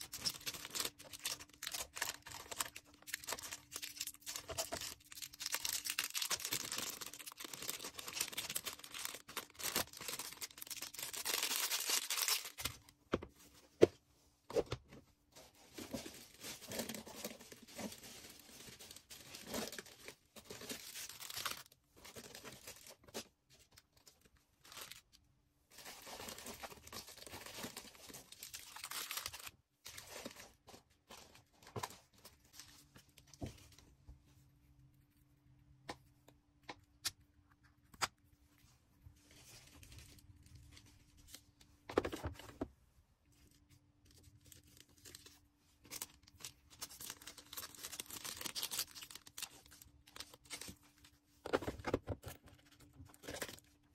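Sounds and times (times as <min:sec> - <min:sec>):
plastic packaging crinkling: 0:00.0 - 0:12.9, 0:15.7 - 0:23.3, 0:25.7 - 0:32.2, 0:44.1 - 0:53.9.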